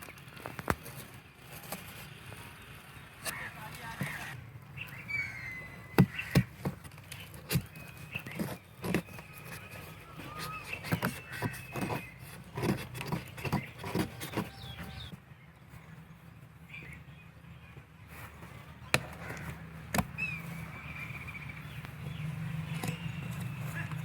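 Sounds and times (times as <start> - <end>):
faint high chirping: 4.8 - 6.4.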